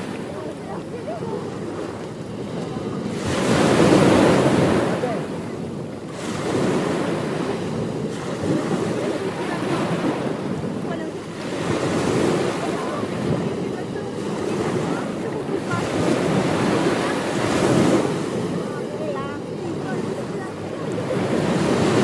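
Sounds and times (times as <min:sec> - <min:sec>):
ocean waves breaking on beach: 0:00.0 - 0:22.0.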